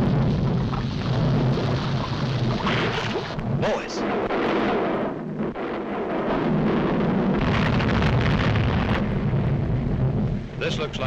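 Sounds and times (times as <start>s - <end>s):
volcanic eruption rumble: 0.0s - 11.0s.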